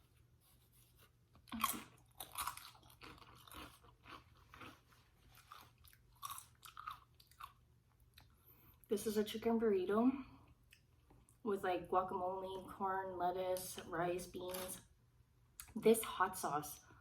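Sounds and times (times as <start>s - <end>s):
person chewing crunchy food: 1.3s - 8.8s.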